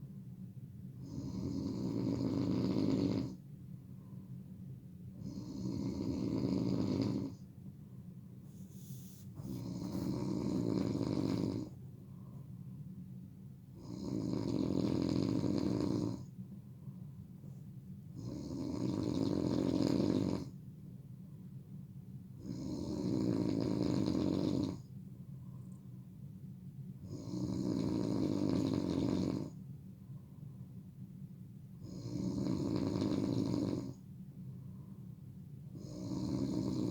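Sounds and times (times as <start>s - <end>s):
quiet breathing: 1.0s - 14.0s, 15.0s - 19.1s, 24.7s - 26.4s, 29.4s - 31.0s, 31.8s - 36.9s
person snoring loudly: 9.5s - 11.7s, 35.8s - 36.9s.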